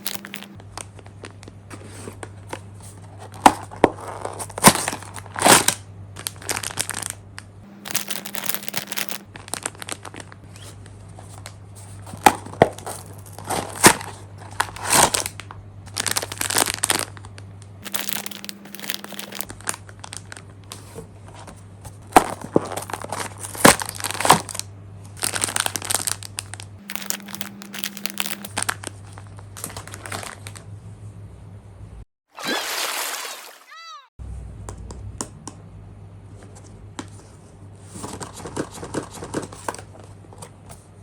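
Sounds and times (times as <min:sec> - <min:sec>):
plastic packaging crinkling: 0:00.0 - 0:30.7.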